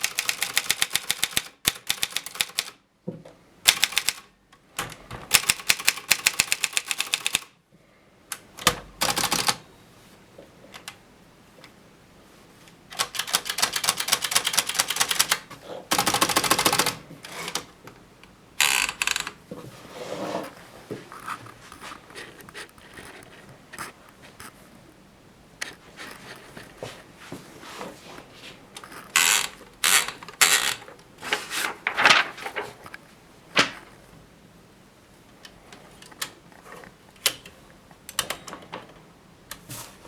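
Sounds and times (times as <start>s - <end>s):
typewriter carriage rattling: 0.0s - 2.8s, 3.7s - 7.5s, 8.4s - 9.6s, 12.9s - 17.7s, 18.6s - 19.4s, 28.9s - 32.9s.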